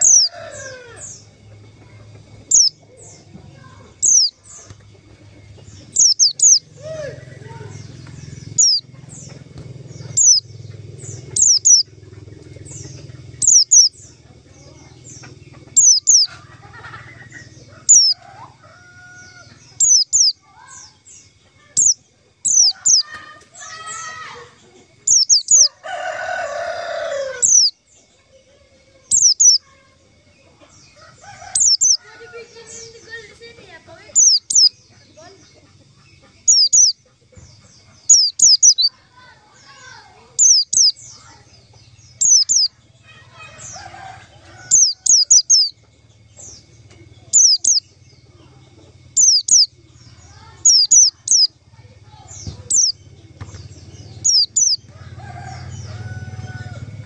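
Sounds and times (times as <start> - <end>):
rooster crowing: 0.0 - 1.4, 5.4 - 7.7, 15.7 - 20.8, 21.8 - 27.7, 30.9 - 33.2, 42.2 - 45.7, 54.0 - 57.0
high bird chirps: 0.0 - 28.3, 29.0 - 29.8, 30.4 - 56.8.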